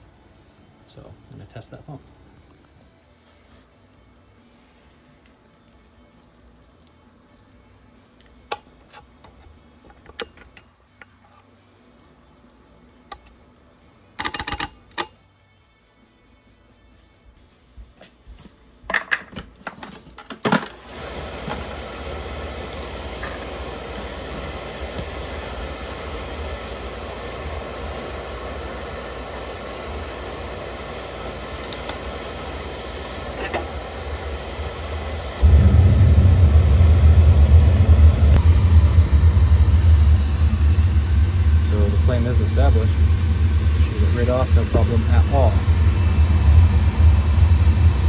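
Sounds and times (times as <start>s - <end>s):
burner motor running: 20.8s - 48.0s
burner clicks: 21.0s - 48.0s
low combustion rumble: 21.0s - 48.0s.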